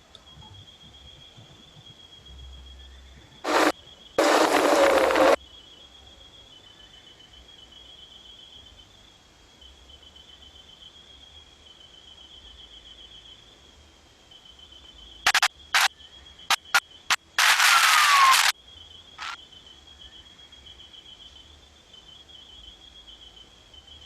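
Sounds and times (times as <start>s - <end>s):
insects trilling: 0.0s - 24.0s
noise burst with falling tone: 3.4s - 5.4s
sharp loud clicks: 15.3s - 15.9s, 16.5s - 18.5s.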